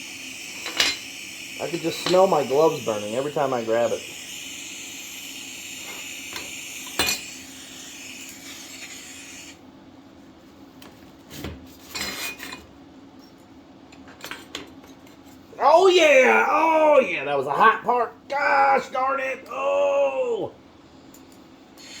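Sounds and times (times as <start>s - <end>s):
welding arc hissing and buzzing: 0.0s - 9.6s.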